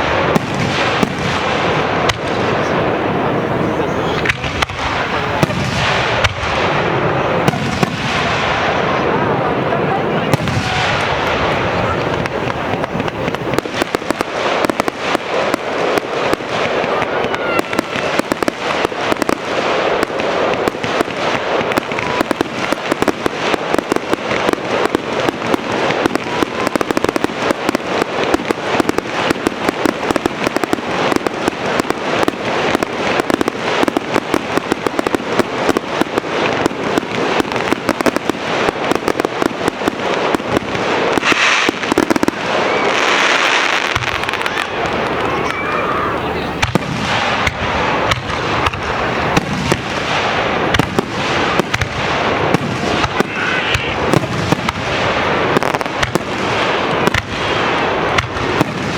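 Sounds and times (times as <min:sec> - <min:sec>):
fireworks bursting: 0:00.0 - 0:58.9.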